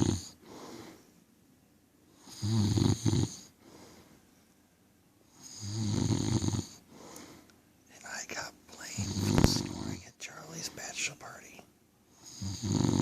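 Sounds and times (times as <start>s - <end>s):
person snoring: 0.0s - 0.4s, 2.2s - 3.5s, 5.4s - 6.8s, 8.8s - 10.1s, 12.2s - 13.0s
quiet breathing: 0.0s - 1.3s, 2.1s - 13.0s.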